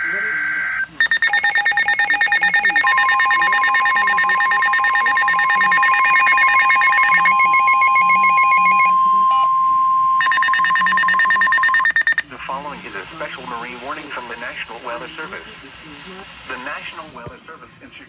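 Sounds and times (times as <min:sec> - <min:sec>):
pulsing electronic alarm: 0:00.0 - 0:12.2
steady high warning tone: 0:00.0 - 0:12.2.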